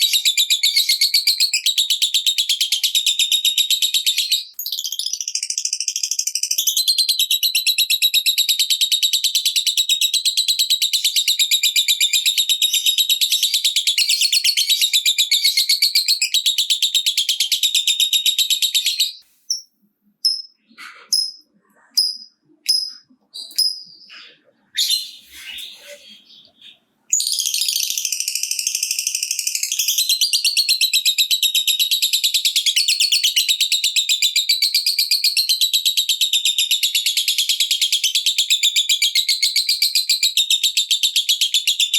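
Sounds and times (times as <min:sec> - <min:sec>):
lovebird chattering trill: 0:10.9 - 0:28.4
short bird chirps: 0:18.7 - 0:28.7.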